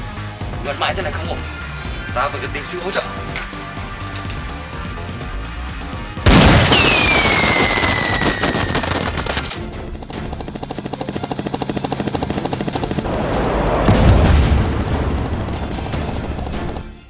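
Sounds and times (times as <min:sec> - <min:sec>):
background music: 0:00.0 - 0:17.0
gunshot blast with falling whine: 0:06.2 - 0:09.6
automatic gunfire burst: 0:06.3 - 0:09.6.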